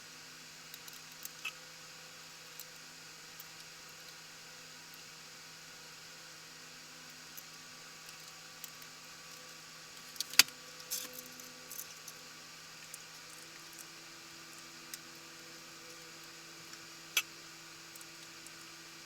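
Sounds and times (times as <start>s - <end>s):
electrical hum: 0.8s - 19.0s
small metal parts clicking: 10.1s - 12.2s.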